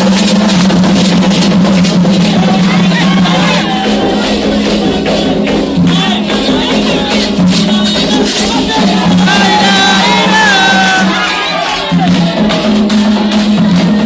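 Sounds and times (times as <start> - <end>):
group of voices singing: 0.0 - 14.0
rattles and shakers percussion: 0.0 - 14.0.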